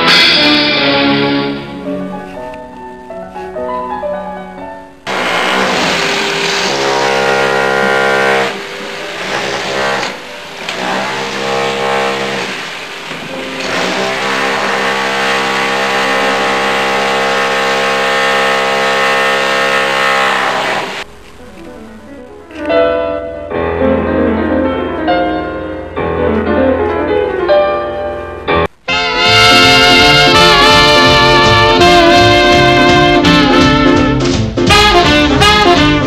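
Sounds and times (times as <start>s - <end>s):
noisy wash: 5.0s - 22.5s.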